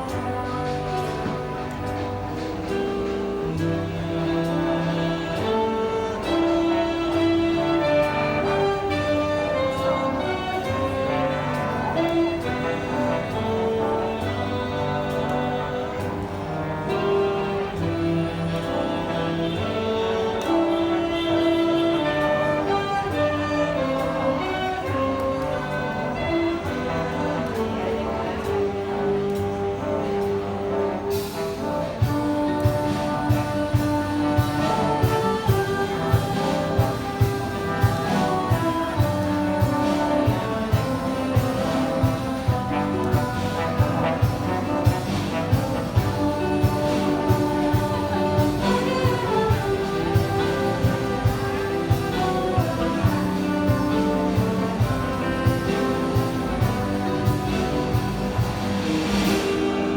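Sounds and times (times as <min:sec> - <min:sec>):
brass section playing chords: 0:00.0 - 0:59.9
drum kit hits and cymbals: 0:31.1 - 0:59.9.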